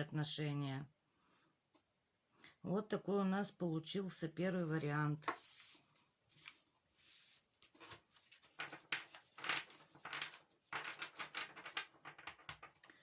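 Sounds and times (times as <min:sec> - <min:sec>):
cards being shuffled: 0:05.2 - 0:12.9.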